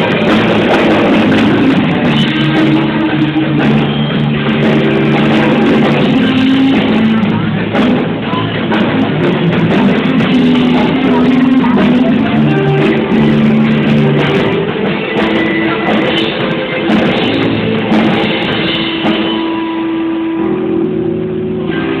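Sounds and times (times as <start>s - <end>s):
live rock band playing: 0.0s - 22.0s.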